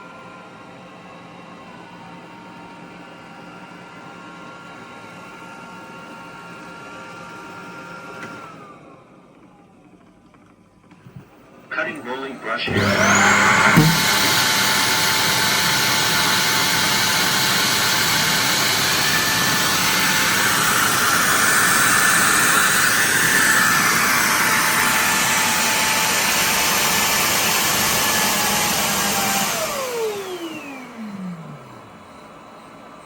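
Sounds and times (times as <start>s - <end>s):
robot vacuum suction whine: 11.8s - 33.0s.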